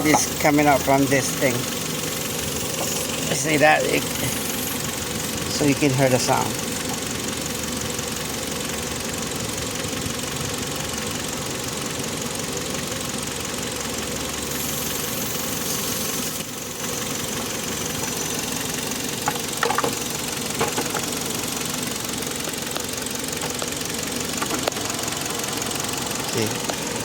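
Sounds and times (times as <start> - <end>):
car engine idling: 0.0 - 27.0
refrigerant hissing from can: 2.5 - 5.4, 14.4 - 16.7.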